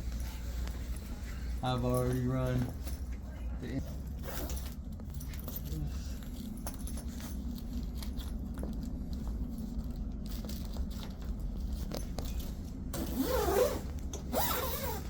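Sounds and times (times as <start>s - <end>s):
steady low hum: 0.0s - 15.0s
zipper rasping: 12.9s - 15.0s.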